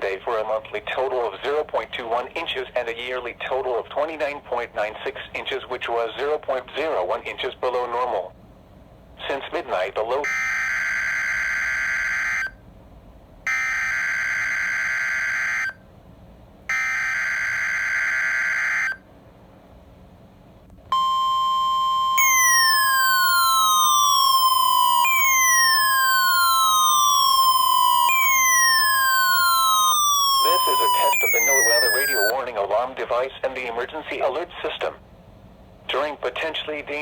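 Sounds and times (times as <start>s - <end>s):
steady alarm tone: 10.3s - 12.5s, 13.5s - 15.8s, 16.7s - 19.0s, 21.0s - 32.3s
falling siren-like sweeps: 22.2s - 32.3s
warbling digital data tones: 22.2s - 32.3s.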